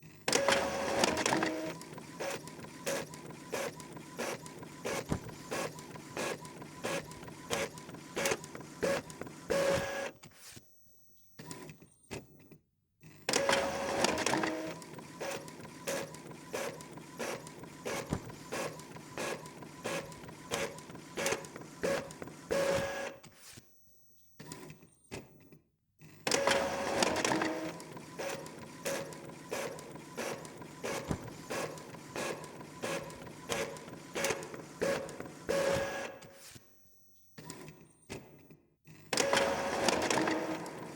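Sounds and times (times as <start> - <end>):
printer clicks: 0.3 - 10.0, 13.3 - 23.1, 26.3 - 36.3, 39.2 - 40.9
printer carriage whine: 0.3 - 10.2, 13.3 - 23.2, 26.2 - 36.4, 39.1 - 40.9
printer mechanism sounds: 0.3 - 10.6, 11.4 - 12.4, 13.2 - 23.4, 24.4 - 25.3, 26.2 - 36.6, 39.0 - 40.9.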